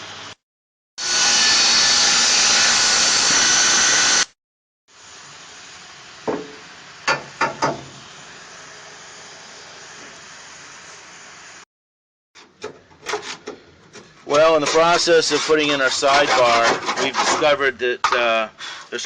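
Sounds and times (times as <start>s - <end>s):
power tool cutting steel tubing: 1.0s - 10.8s
sharp knocks: 6.3s - 7.9s.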